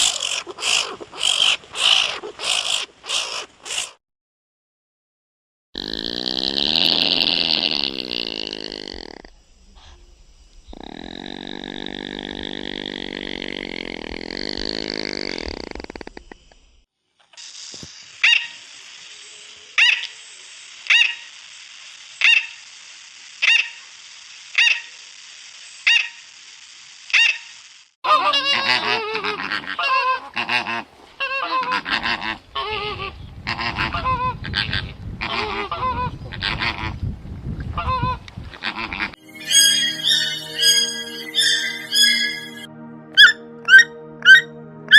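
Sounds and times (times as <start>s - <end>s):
long drawn-out animal calls: 0.0s - 4.0s, 28.1s - 36.9s, 37.8s - 44.5s
steady hiss: 6.5s - 28.0s
sharp short animal call: 39.4s - 44.5s.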